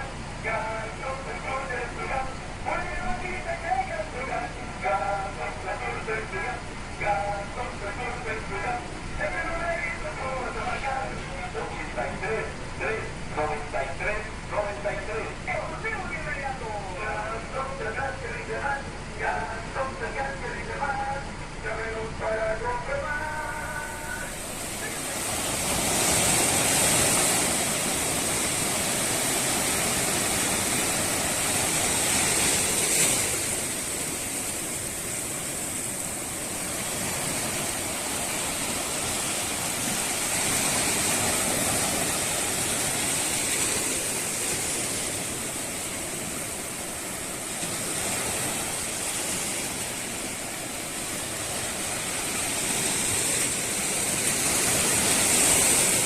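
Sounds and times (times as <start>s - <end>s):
high steady hiss: 0.0s - 56.0s
water rushing: 0.0s - 56.0s.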